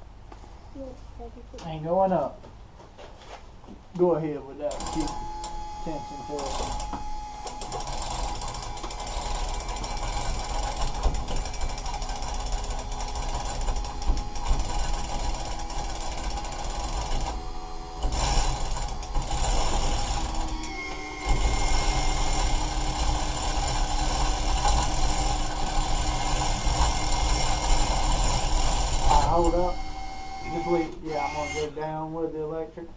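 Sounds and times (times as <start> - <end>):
steady hum: 3.9 - 32.9
chain hoist ratchet clicking: 4.7 - 5.6, 6.3 - 17.4, 18.0 - 29.7.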